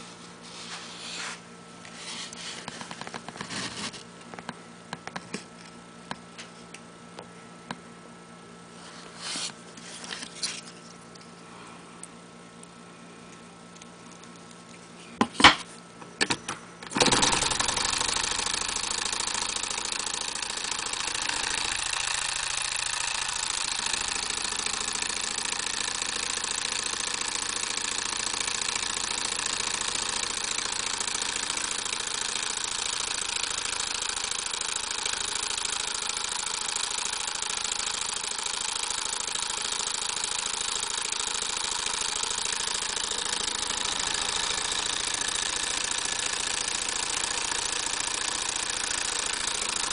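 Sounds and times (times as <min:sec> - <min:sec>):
small electric motor whirring: 0:00.0 - 0:04.0, 0:08.8 - 0:11.3, 0:16.9 - 0:49.9.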